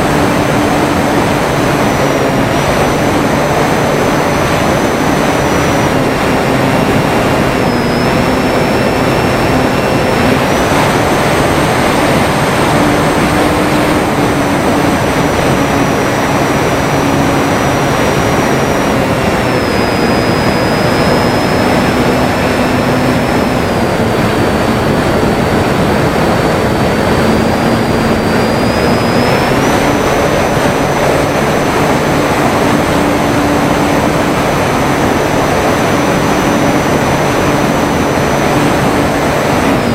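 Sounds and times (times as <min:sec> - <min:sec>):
model plane motor whining: 0:00.0 - 0:39.9
wind noise on microphone: 0:00.0 - 0:39.9.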